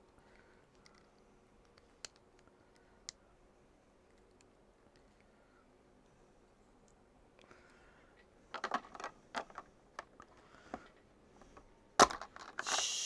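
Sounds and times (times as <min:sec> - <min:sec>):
plastic bricks clicking: 0:08.6 - 0:10.4, 0:12.0 - 0:12.9
plastic brick snap: 0:12.0 - 0:12.8.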